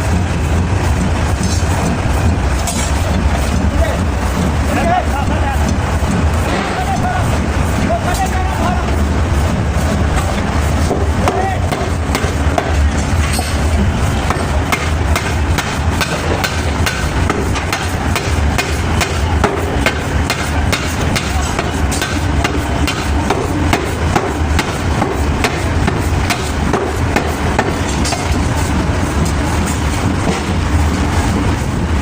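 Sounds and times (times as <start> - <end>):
low rumble of machinery: 0.0 - 32.0
hammer striking metal: 10.2 - 28.4.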